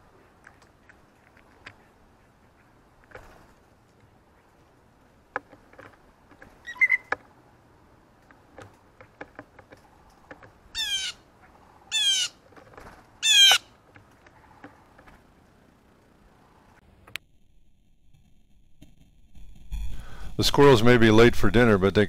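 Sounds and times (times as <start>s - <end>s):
light clicks and taps: 0.4s - 1.9s, 8.2s - 10.6s
blue jay harsh calls: 6.6s - 7.1s, 10.7s - 12.4s, 13.2s - 13.7s.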